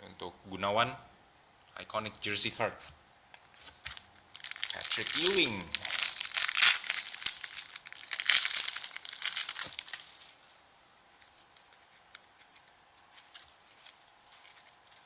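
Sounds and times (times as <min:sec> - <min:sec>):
plastic wrapper crinkling and tearing: 0:03.6 - 0:10.4.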